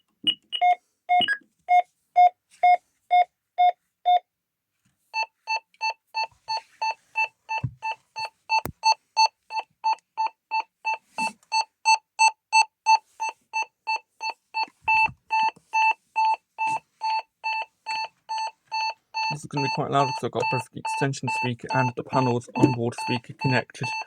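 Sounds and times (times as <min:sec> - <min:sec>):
slow low alarm beep: 0:14.9 - 0:24.0
fast high alarm beeping: 0:19.2 - 0:24.0.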